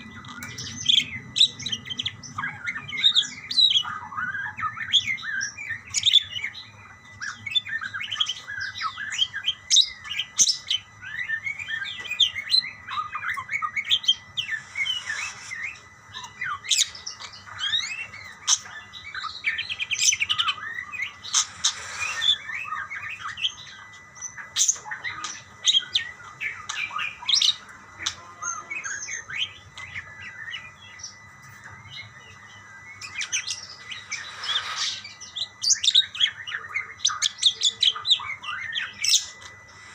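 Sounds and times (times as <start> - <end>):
budgerigars chirping: 0.0 - 31.0, 33.0 - 39.9.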